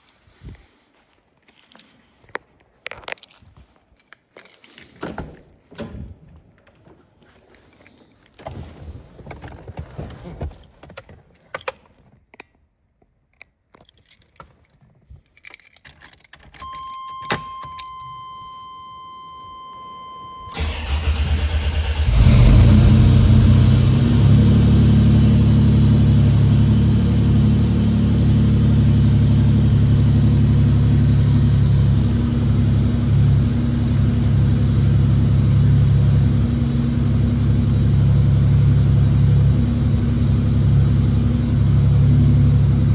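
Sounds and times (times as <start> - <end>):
engine starter cranking: 20.5 - 26.7
engine fast idle: 20.5 - 42.9.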